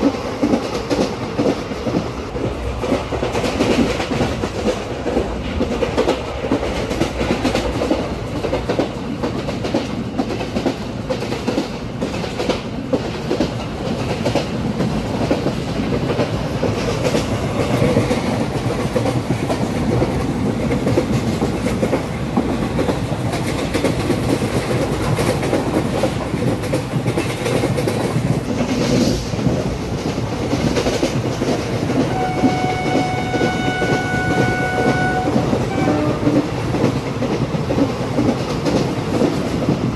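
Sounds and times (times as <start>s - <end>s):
clickety-clack of rail joints: 0.0s - 39.9s
train wheels rumbling on rail: 0.0s - 39.9s
train horn: 32.1s - 36.6s.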